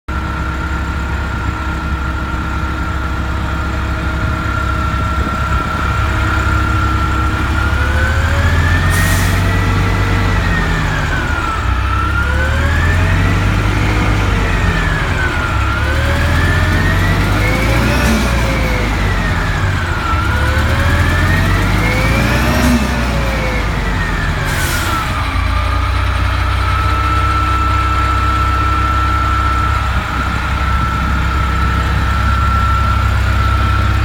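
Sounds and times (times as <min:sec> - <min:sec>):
bus engine drone and whine: 0:00.1 - 0:34.0
air brake hiss: 0:08.9 - 0:09.6, 0:24.5 - 0:25.1.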